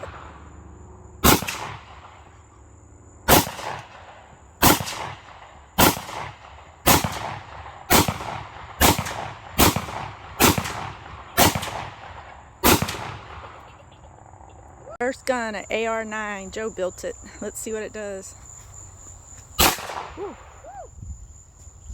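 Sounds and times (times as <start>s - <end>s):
gunshots with echo: 0.0s - 0.6s, 1.2s - 2.3s, 3.3s - 13.8s, 19.6s - 20.3s.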